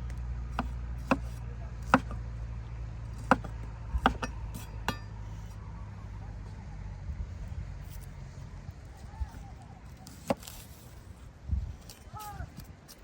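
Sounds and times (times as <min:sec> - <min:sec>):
steady low hum: 0:00.0 - 0:13.0
knife chopping on cutting board: 0:00.6 - 0:02.2, 0:03.2 - 0:04.3.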